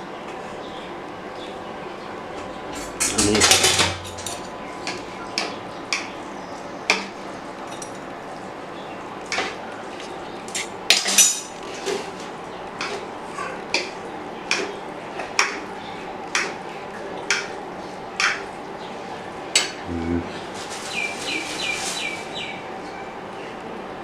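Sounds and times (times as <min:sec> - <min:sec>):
metal utensils clinking on dishes: 0:02.4 - 0:06.1, 0:06.9 - 0:08.1, 0:10.5 - 0:12.1.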